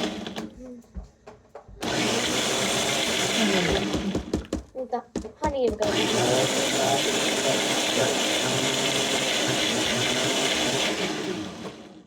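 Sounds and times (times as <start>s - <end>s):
blender running: 0.0s - 0.6s, 1.8s - 4.6s, 5.8s - 12.0s.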